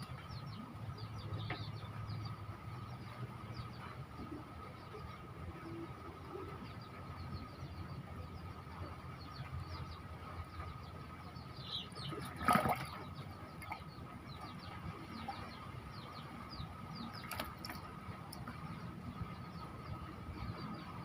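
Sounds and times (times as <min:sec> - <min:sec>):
birds chirping: 0:00.0 - 0:21.0.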